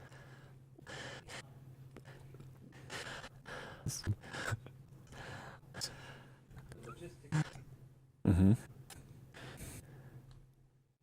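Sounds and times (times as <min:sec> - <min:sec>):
person breathing into microphone: 0:09.4 - 0:10.2.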